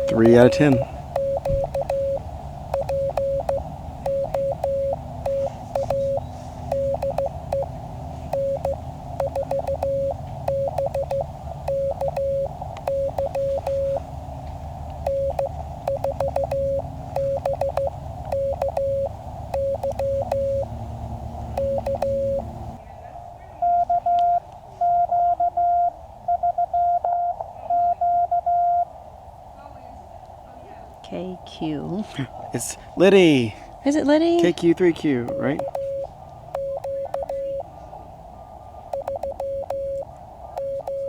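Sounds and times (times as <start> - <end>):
radio band hiss: 0.0 - 1.6
morse code tone: 0.0 - 14.1, 15.0 - 20.8, 21.4 - 22.8, 23.6 - 28.9, 35.2 - 37.7, 38.9 - 41.0
static crackles: 0.0 - 20.8, 38.9 - 41.0.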